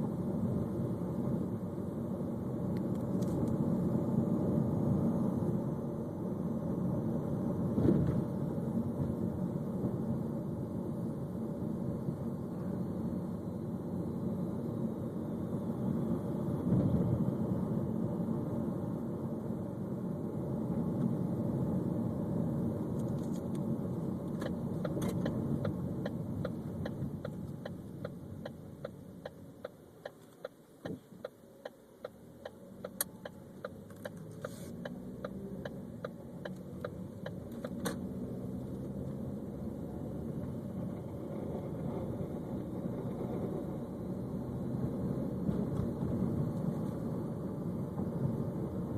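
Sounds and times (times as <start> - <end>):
car engine and road noise: 0.0 - 48.9
regular ticking: 24.4 - 37.8.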